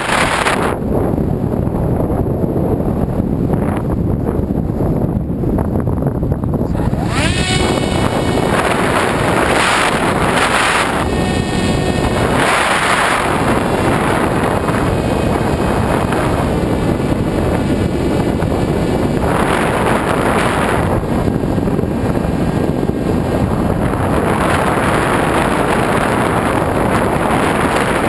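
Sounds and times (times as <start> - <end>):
wind rushing over microphone: 0.0 - 28.0
whine: 6.4 - 25.6.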